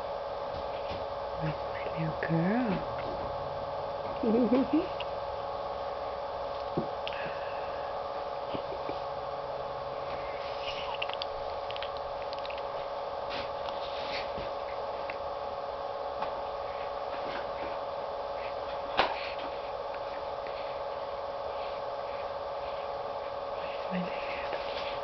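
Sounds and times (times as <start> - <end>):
electrical hum: 0.0 - 25.0.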